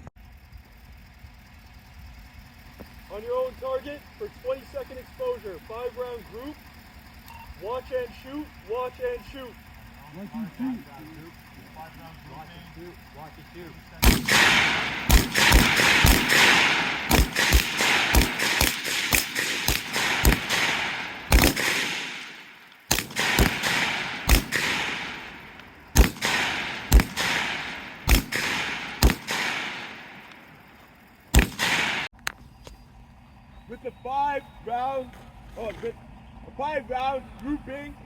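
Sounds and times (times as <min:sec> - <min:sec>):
rifle shots with rolling echo: 0:02.2 - 0:32.1.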